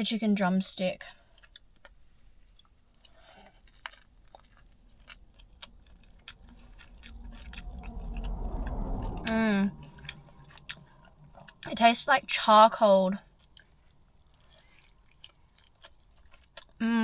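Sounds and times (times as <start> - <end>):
chewing and biting: 1.2 - 11.8, 13.2 - 16.8
low rumble: 4.2 - 14.4.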